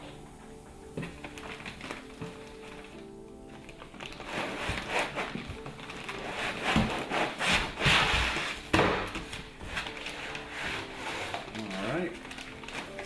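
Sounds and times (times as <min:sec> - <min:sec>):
cardboard box scraping and rustling: 0:03.9 - 0:13.0.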